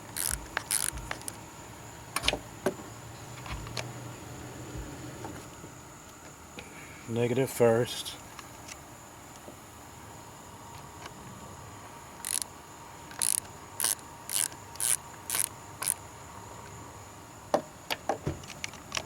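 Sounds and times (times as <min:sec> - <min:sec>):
ratchet wrench ratcheting: 0:00.0 - 0:01.4, 0:12.2 - 0:12.5, 0:13.1 - 0:16.0
sharp clicks and knocks: 0:00.0 - 0:01.4.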